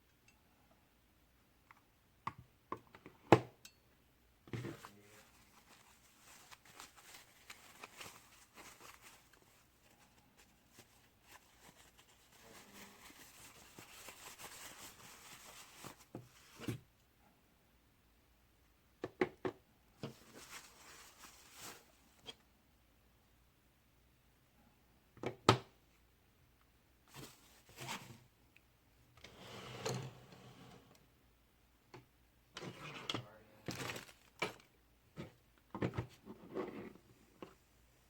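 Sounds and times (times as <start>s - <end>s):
soft rustling and scraping: 4.5s - 16.8s, 20.0s - 22.4s, 27.1s - 28.3s, 32.6s - 35.4s, 36.0s - 38.0s.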